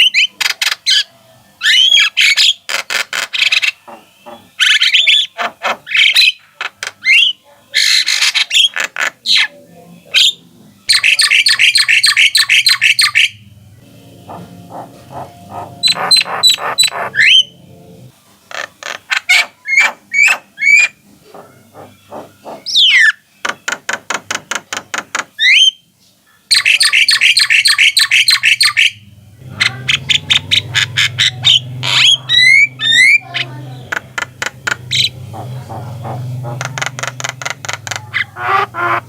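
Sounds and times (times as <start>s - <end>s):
myna calling: 0.0s - 23.3s, 26.5s - 39.0s
steady low hum: 13.3s - 18.1s, 29.0s - 39.0s.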